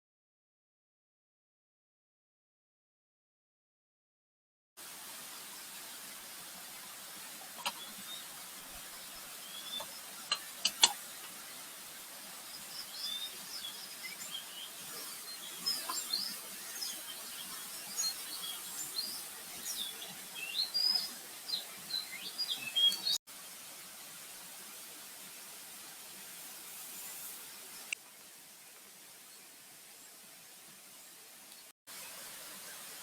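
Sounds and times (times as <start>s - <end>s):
steady hiss: 4.8s - 33.0s
forest birds chirping: 5.3s - 23.2s
sharp clicks: 9.8s - 11.0s.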